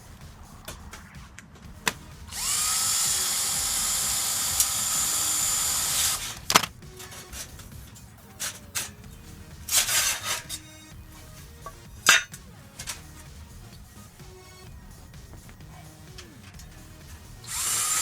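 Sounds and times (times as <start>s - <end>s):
power drill whining: 2.0s - 7.6s, 17.4s - 18.0s.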